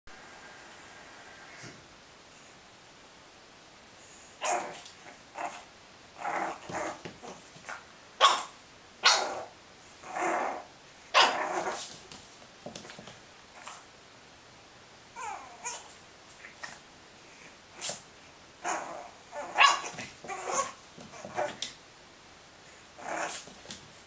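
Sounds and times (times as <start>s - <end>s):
dog barking: 8.2s - 9.4s, 19.6s - 19.9s.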